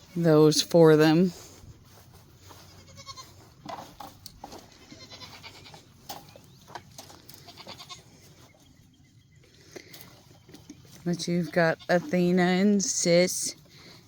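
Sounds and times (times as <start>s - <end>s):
faint goat bleat: 2.7s - 3.4s, 4.9s - 5.8s, 7.4s - 8.0s.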